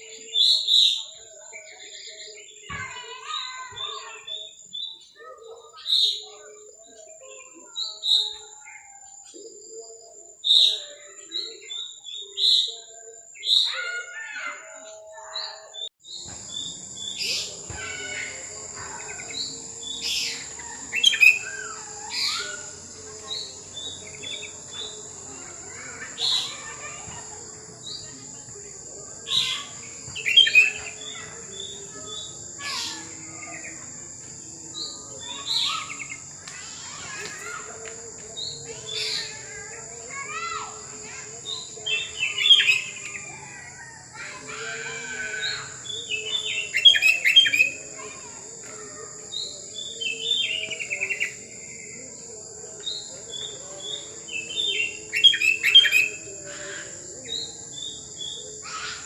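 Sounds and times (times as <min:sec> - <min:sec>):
bulbuls chirping: 0:15.4 - 0:59.0.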